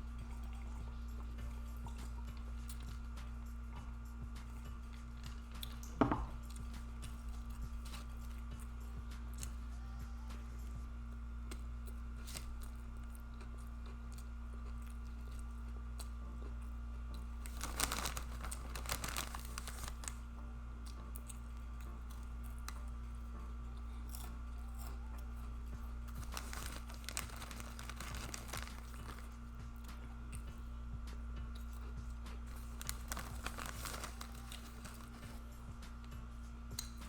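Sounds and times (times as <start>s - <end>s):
steady low hum: 0.0s - 37.0s
chewing and smacking: 0.2s - 9.6s, 11.5s - 20.1s, 36.7s - 37.0s.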